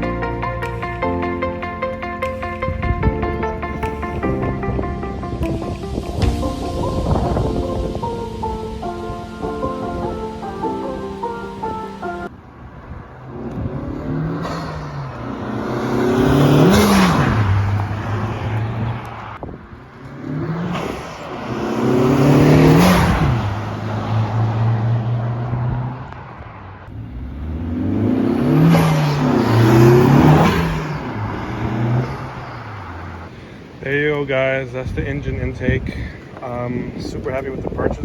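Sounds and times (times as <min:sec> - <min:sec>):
car engine revving: 0:13.0 - 0:26.1, 0:26.9 - 0:33.3.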